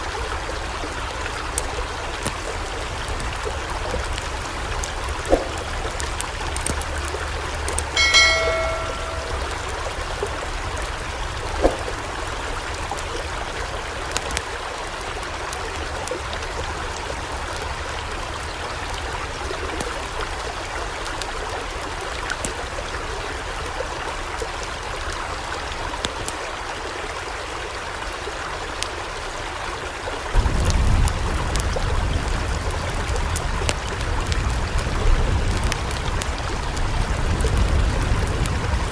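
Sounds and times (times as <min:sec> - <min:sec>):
floodwater rushing: 0:00.0 - 0:26.0
short pitched tone: 0:08.0 - 0:09.7.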